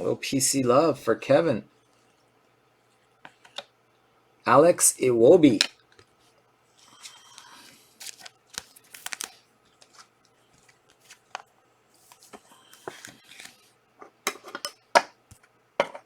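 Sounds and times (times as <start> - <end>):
packaging rustling: 6.9 - 13.7
cards clicking and tapping: 7.4 - 11.5.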